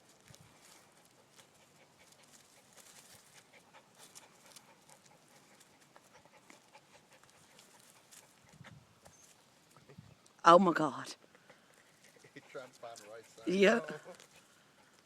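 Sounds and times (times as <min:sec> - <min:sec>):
light rustling: 0:00.0 - 0:10.4
dog panting faintly: 0:00.4 - 0:10.0, 0:11.1 - 0:15.0.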